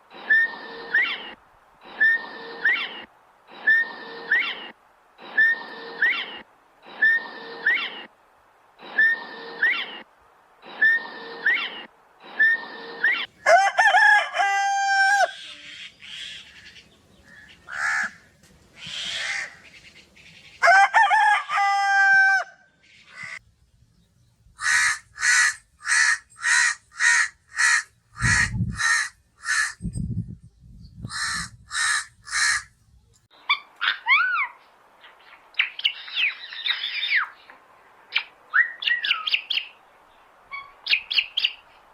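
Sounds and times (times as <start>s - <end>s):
rooster crowing: 13.4s - 15.4s, 20.6s - 22.7s.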